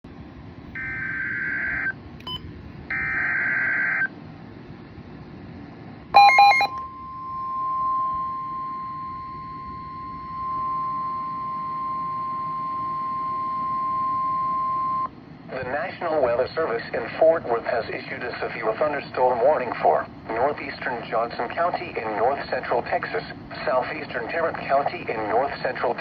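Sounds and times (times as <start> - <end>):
steady warning alert tone: 0.8 - 4.1, 6.2 - 15.1
cluster of beeps: 6.2 - 15.1.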